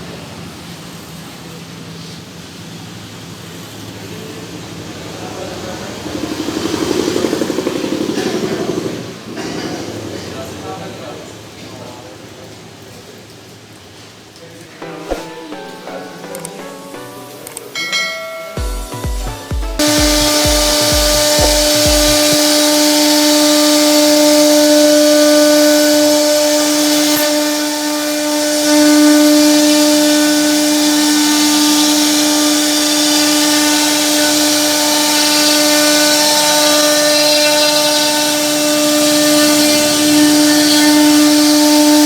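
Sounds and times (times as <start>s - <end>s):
steady hiss: 8.9s - 42.0s
router bit cutting wood: 14.8s - 18.0s, 19.8s - 42.0s
router spindle whining: 19.8s - 42.0s.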